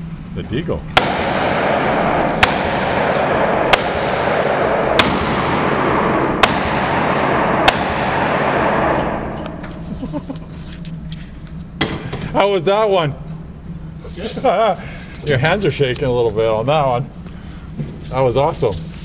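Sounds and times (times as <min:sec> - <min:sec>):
handgun shots: 0:01.0 - 0:05.8, 0:06.4 - 0:09.7
steady rushing noise: 0:01.0 - 0:10.6.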